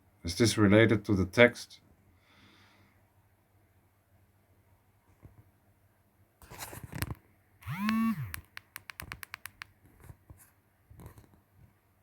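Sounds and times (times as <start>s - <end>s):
short rising and falling hum: 7.6s - 8.4s
mouse and keyboard clicks: 7.7s - 9.8s.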